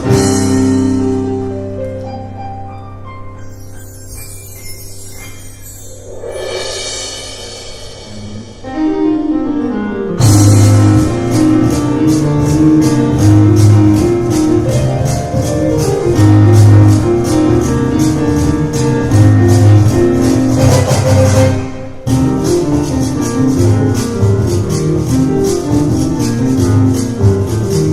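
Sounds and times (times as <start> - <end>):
piano: 0.0 - 27.9
cajon strokes and bass thumps: 10.2 - 27.9.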